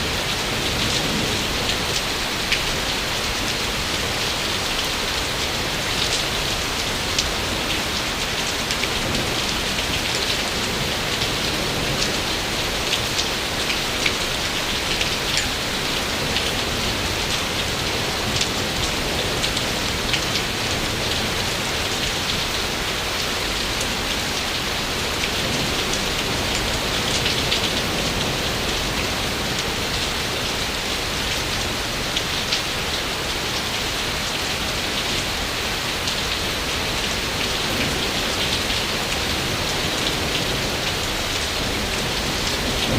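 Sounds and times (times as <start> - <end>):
raindrops pattering: 0.0 - 42.9
steady rain falling: 0.0 - 42.9.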